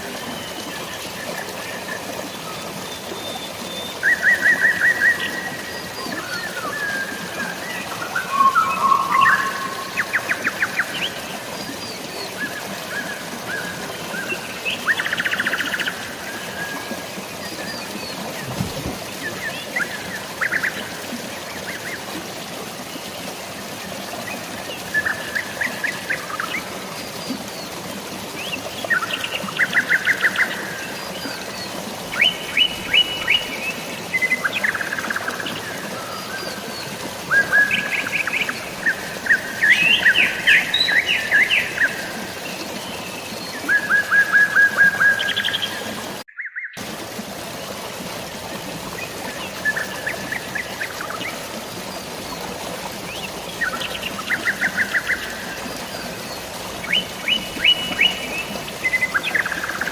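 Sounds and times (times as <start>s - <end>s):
rain hiss: 0.0s - 46.2s, 46.8s - 59.9s
flowing water: 0.0s - 59.9s
songbirds chirping and trilling: 2.8s - 13.0s.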